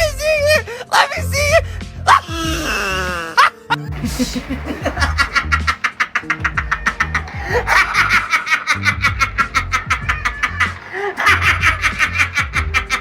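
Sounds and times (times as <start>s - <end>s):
background music with bass line: 0.0s - 13.0s
person laughing in rhythmic bursts: 3.9s - 13.0s.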